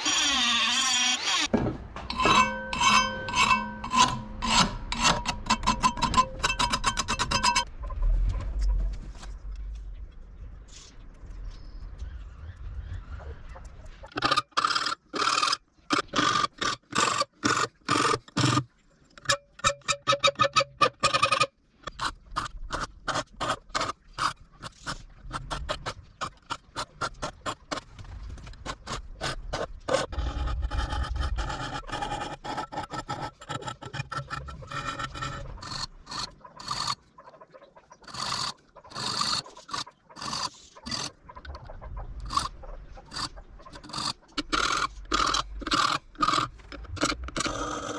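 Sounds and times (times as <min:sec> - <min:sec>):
file scraping steel: 0:02.1 - 0:07.7, 0:28.6 - 0:37.0, 0:38.0 - 0:41.2, 0:42.3 - 0:47.9.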